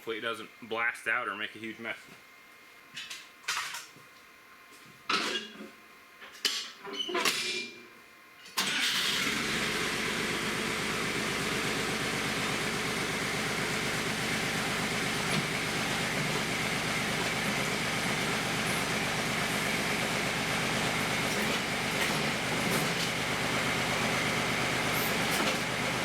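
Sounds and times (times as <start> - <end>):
machine engine idling: 9.2 - 26.0.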